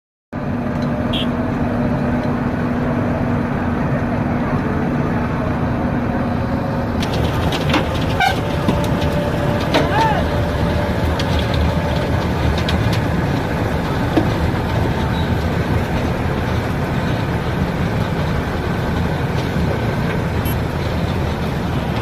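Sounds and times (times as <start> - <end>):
asphalt milling machine grinding: 5.6 - 22.0
clicks and rattles: 7.0 - 17.3.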